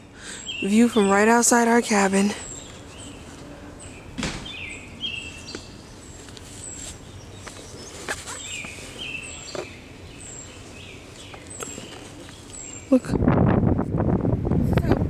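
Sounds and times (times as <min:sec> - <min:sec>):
birds singing: 0:00.0 - 0:13.1
lower whistled bird phrases: 0:02.3 - 0:13.0.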